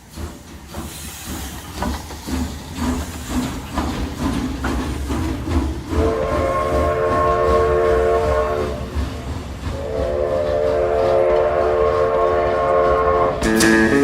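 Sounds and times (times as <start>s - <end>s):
rolling train rumble: 0.0s - 14.0s
train whistle blasts: 6.0s - 8.8s, 9.8s - 14.0s
plucked guitar strings: 13.4s - 14.0s.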